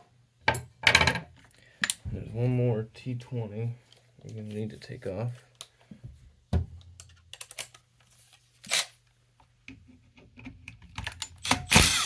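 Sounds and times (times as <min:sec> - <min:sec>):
tools clicking and rustling: 0:07.0 - 0:08.9.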